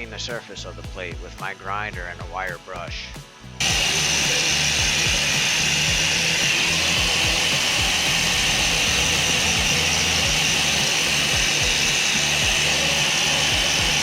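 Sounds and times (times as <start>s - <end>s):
music with bass-drum beat: 0.0s - 14.0s
angle grinder with wire brush: 3.6s - 14.0s.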